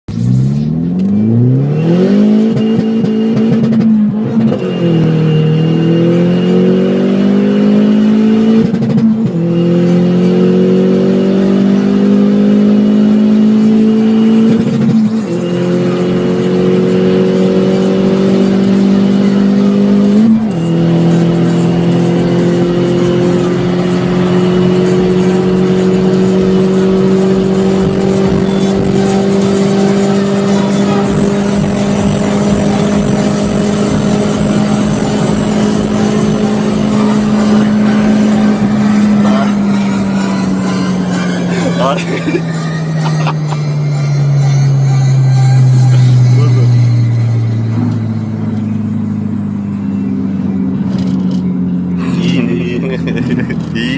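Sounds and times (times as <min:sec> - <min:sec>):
car engine revving through gears: 0:00.0 - 0:53.9.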